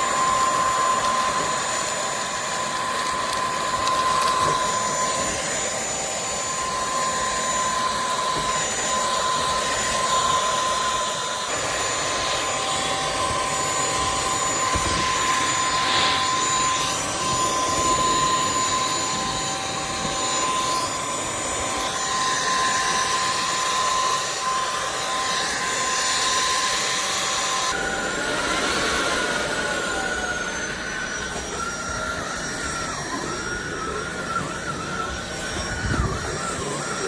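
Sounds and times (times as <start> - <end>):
vacuum cleaner motor whining: 0.0 - 37.0.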